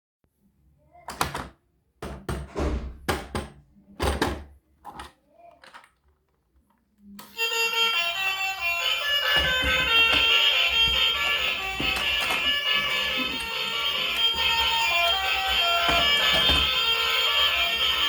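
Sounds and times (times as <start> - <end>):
hard objects knocking: 1.2 - 5.1, 9.1 - 17.0
music with bright melody: 7.3 - 18.0.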